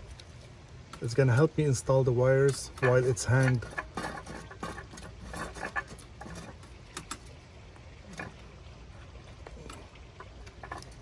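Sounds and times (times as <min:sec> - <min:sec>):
wires rustling: 0:00.0 - 0:11.0
clicks and taps of lantern fixture: 0:09.4 - 0:11.0.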